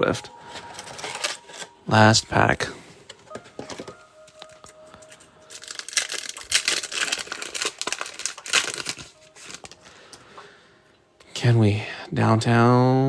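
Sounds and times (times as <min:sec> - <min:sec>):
wrapper tearing and crinkling: 0:00.7 - 0:01.8, 0:03.6 - 0:09.9.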